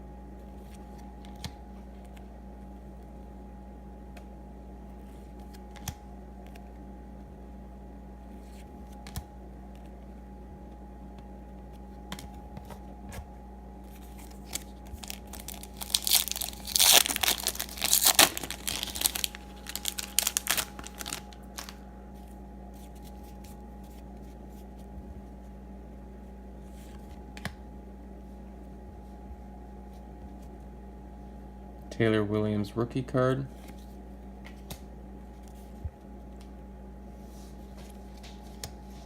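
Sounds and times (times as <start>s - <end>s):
foil wrapper torn and crumpled: 14.0s - 21.8s.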